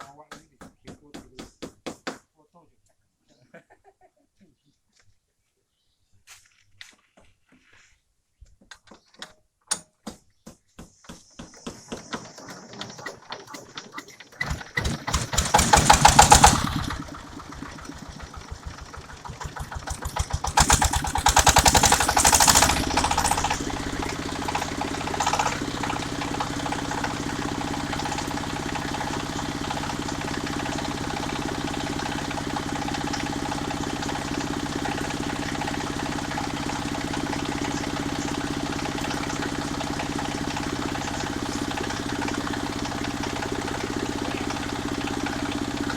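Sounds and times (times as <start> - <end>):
small engine revving: 12.1 - 45.9.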